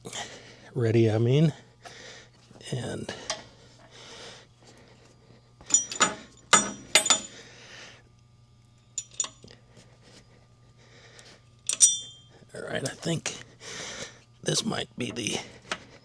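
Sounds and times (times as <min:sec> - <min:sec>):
metal parts clinking and knocking: 0:05.6 - 0:07.4, 0:09.0 - 0:09.5, 0:11.6 - 0:12.9.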